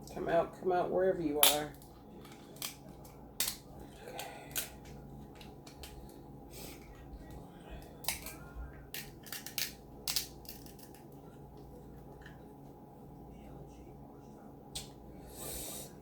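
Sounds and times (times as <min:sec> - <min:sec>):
shellfish shell cracking: 0:01.4 - 0:06.0, 0:07.9 - 0:11.2.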